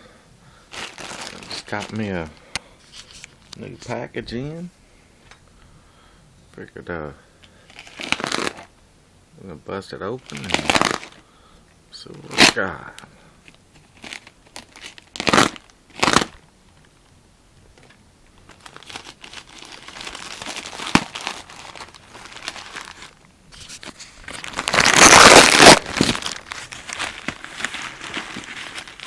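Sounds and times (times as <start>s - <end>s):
packaging tearing: 0.7s - 2.1s, 7.7s - 8.7s, 10.2s - 11.2s, 12.3s - 12.6s, 13.8s - 16.4s, 18.5s - 29.0s
packaging crinkling: 0.7s - 3.9s, 7.6s - 8.7s, 10.2s - 11.2s, 13.5s - 16.8s, 17.8s - 29.0s.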